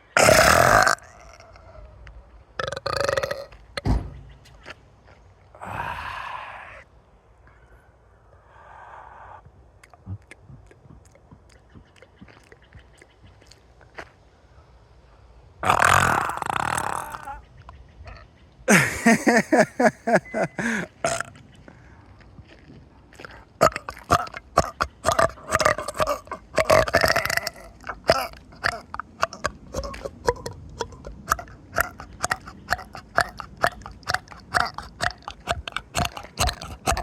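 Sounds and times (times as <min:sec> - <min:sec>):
throat croaks and clicks: 0:00.0 - 0:04.8, 0:09.4 - 0:14.2, 0:15.6 - 0:18.6, 0:19.6 - 0:21.8, 0:23.1 - 0:37.0
person burping: 0:00.1 - 0:01.4, 0:02.6 - 0:03.6, 0:05.6 - 0:06.8, 0:09.8 - 0:11.2, 0:15.6 - 0:17.4, 0:18.7 - 0:21.4, 0:23.6 - 0:37.0.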